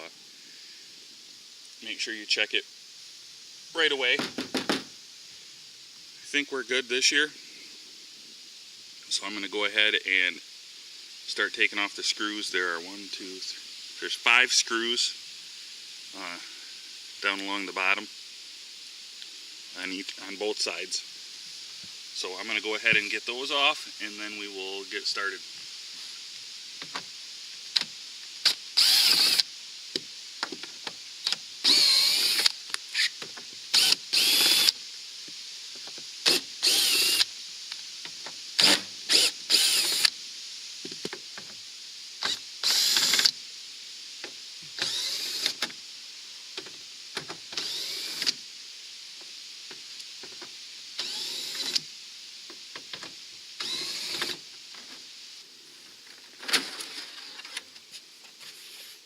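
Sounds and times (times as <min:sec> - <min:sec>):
cordless drill whining: 0:28.8 - 0:29.4, 0:31.6 - 0:33.1, 0:33.7 - 0:34.8, 0:36.3 - 0:37.3, 0:38.6 - 0:40.1, 0:42.2 - 0:43.3, 0:44.8 - 0:45.6, 0:47.5 - 0:48.3, 0:51.0 - 0:51.8, 0:53.6 - 0:54.4.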